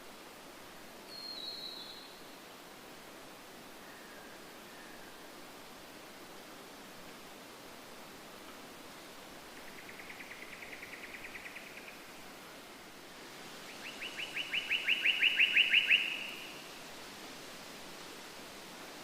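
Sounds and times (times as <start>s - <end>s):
background hiss: 0.0s - 19.0s
bird trilling: 14.0s - 16.4s.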